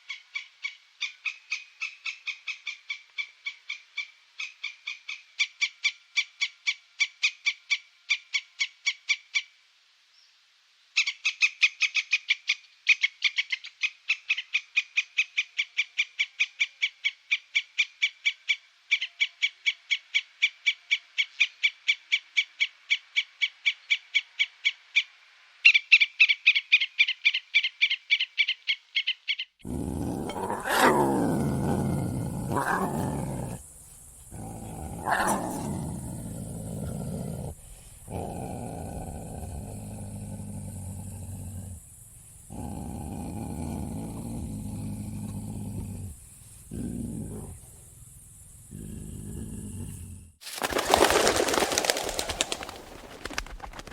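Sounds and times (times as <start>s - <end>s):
animal chirping rapidly: 29.0s - 38.4s
deep growling animal call: 29.6s - 53.5s.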